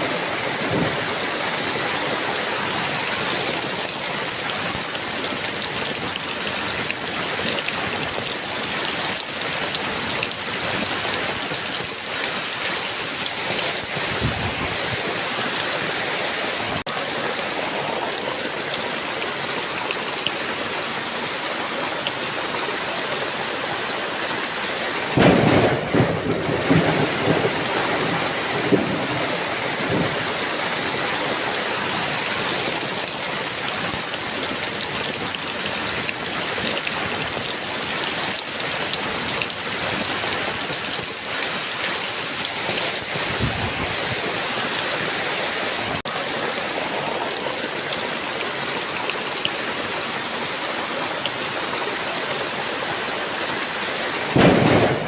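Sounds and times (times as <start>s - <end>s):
heavy rain: 0.0s - 55.0s
thunder rumbling: 25.2s - 30.3s, 54.3s - 55.0s.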